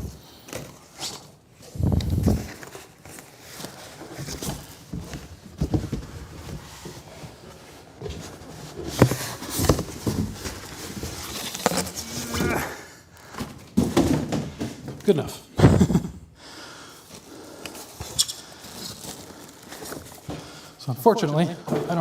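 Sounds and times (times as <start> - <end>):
packaging rustling: 0.3 - 14.1, 17.0 - 20.8
knocks and thumps: 8.9 - 12.6, 13.4 - 15.0.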